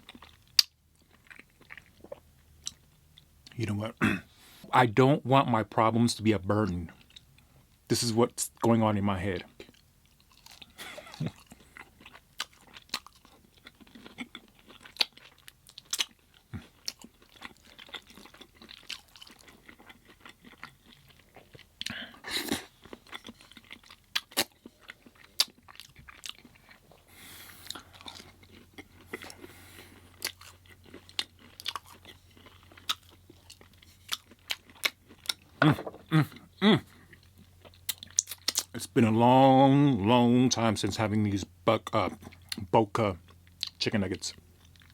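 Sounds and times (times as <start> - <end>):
crunching and chewing food: 0.0 - 4.6, 5.7 - 41.1, 41.7 - 44.9
mouth clicks and smacks: 37.9 - 38.8.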